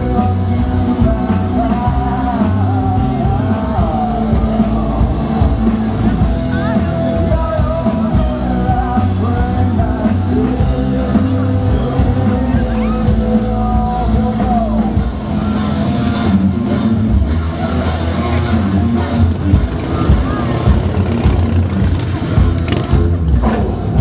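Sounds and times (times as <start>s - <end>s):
person singing: 0.0s - 15.2s
rock band playing: 0.0s - 24.0s.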